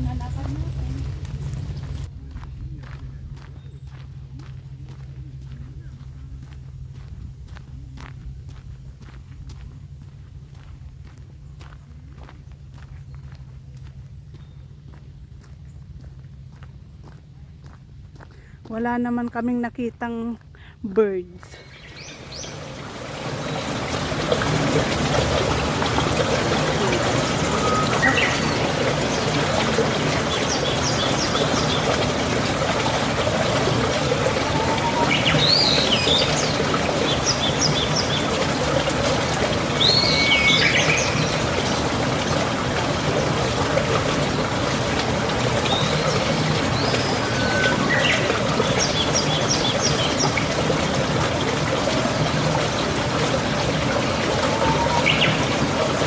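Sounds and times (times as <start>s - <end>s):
wild birds calling: 19.6s - 56.0s
rushing water: 21.5s - 56.0s.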